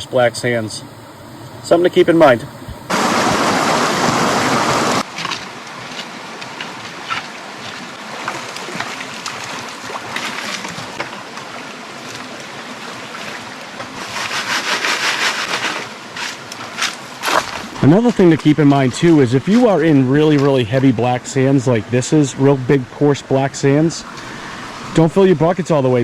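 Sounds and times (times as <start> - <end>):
brook water running: 0.0 - 26.0
rhythmic swishing of water: 0.2 - 26.0
water trickling: 0.9 - 14.0.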